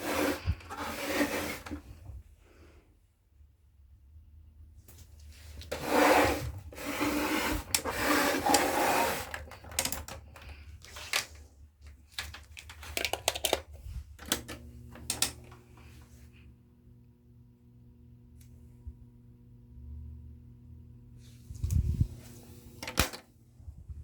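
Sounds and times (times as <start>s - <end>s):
electric fan motor humming: 0.0s - 1.9s, 5.6s - 10.7s, 13.0s - 23.4s
rubbing and scraping: 0.0s - 2.0s, 5.4s - 9.9s
sharp clicks of fan controls: 14.2s - 15.6s.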